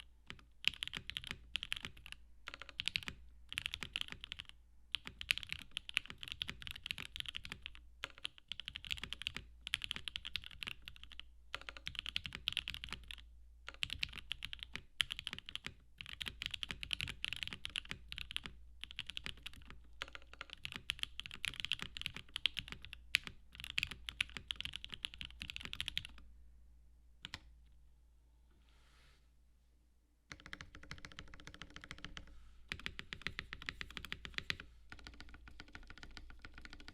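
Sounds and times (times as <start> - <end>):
mechanical keyboard typing: 0.0 - 26.2, 30.3 - 36.9.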